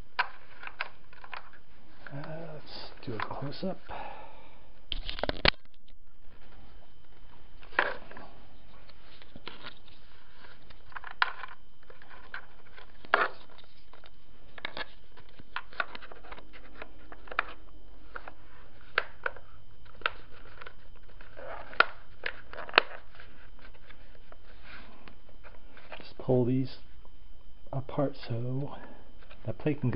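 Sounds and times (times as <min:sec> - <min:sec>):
plastic parts clicking and knocking: 0:00.2 - 0:02.2.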